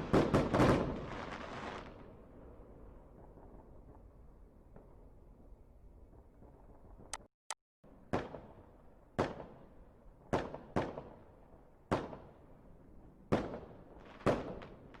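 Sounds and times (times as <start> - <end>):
fireworks bangs with echo: 0.0 - 2.1, 9.2 - 9.7, 11.9 - 12.3, 13.3 - 15.0.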